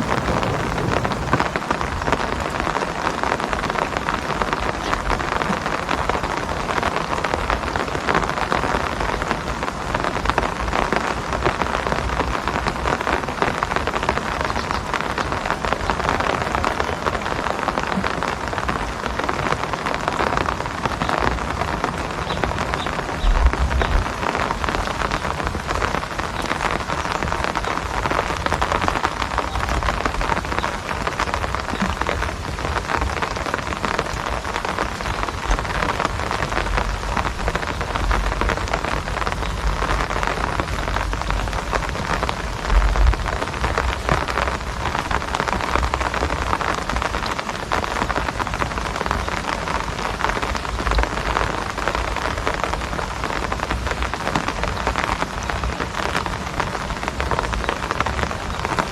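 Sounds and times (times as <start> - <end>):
low rumbles: 0.0 - 1.5
steady rain falling: 0.0 - 58.9.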